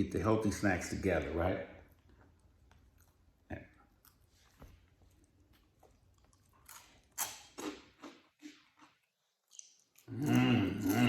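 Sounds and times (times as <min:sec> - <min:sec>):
crunchy snacks being chewed: 0:05.2 - 0:11.0.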